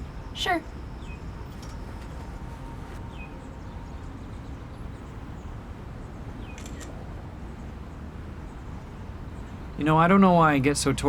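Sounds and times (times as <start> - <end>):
low background ambience: 0.0 - 11.0
camera shutter clicks: 6.6 - 6.9.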